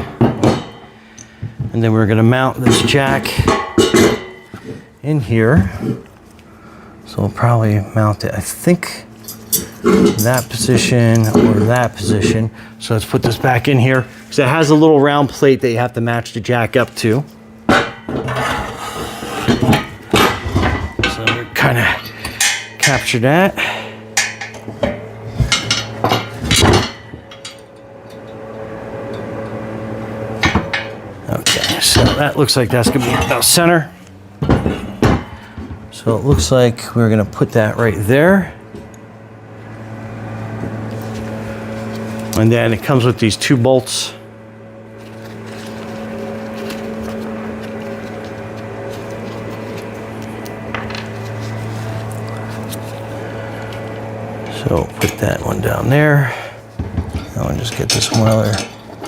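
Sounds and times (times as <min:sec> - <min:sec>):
metal clanks and knocks: 0:00.0 - 0:00.9, 0:02.6 - 0:04.6, 0:17.7 - 0:23.1, 0:24.2 - 0:28.4, 0:34.4 - 0:36.5, 0:56.8 - 0:59.0
machine humming: 0:00.0 - 0:59.0.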